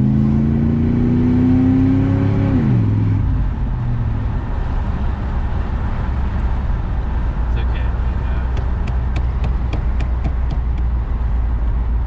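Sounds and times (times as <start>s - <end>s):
car engine pulling: 3.3s - 12.0s.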